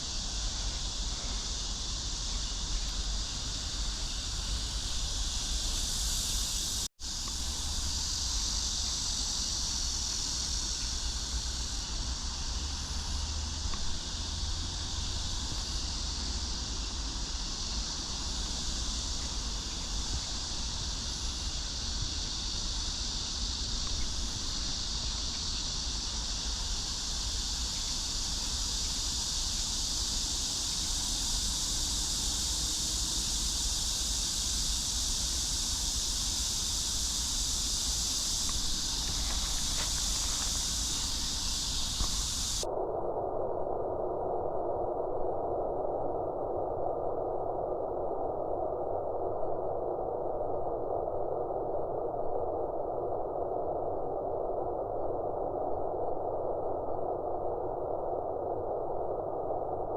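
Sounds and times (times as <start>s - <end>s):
insects chirping: 0.0s - 43.3s.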